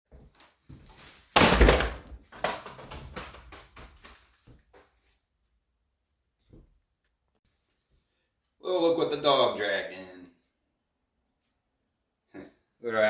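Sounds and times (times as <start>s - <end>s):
knocks and clatters: 1.4s - 4.3s.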